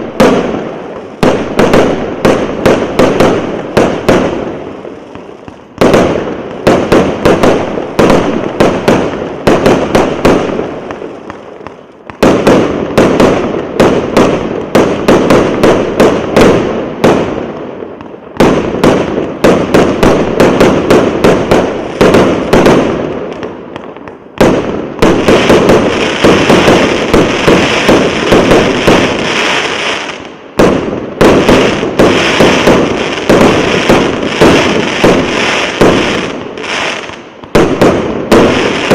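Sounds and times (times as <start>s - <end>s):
firework battery firing: 24.4s - 38.9s.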